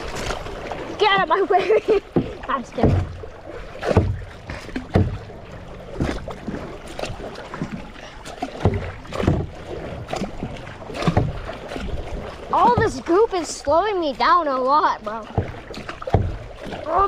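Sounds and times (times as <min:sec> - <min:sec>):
paddle strokes in water: 0:00.0 - 0:17.0
knocks on plastic hull: 0:02.1 - 0:03.2, 0:03.8 - 0:05.3, 0:08.6 - 0:09.6, 0:11.0 - 0:11.4, 0:15.3 - 0:16.8.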